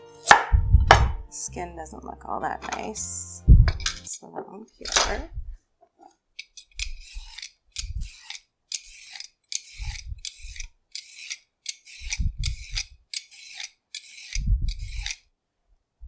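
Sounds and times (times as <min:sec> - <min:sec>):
peeler scraping carrot: 0:06.4 - 0:15.2.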